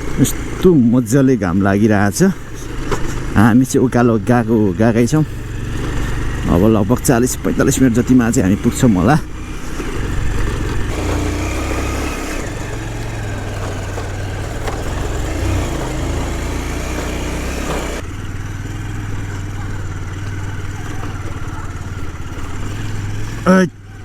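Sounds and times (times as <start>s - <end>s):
road noise: 0.0s - 24.0s
vehicle engine under load: 0.0s - 24.0s.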